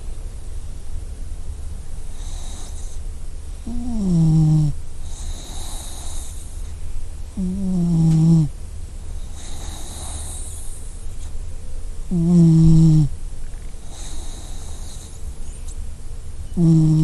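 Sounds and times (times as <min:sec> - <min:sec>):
puppy snoring: 0:02.0 - 0:08.6, 0:09.2 - 0:11.0, 0:12.1 - 0:13.2, 0:13.8 - 0:15.3, 0:16.5 - 0:17.0.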